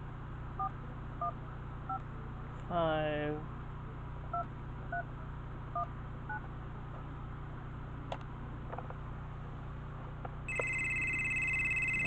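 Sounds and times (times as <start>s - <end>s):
steady low hum: 0.0s - 12.0s
touch-tone keypad beeps: 10.5s - 12.0s.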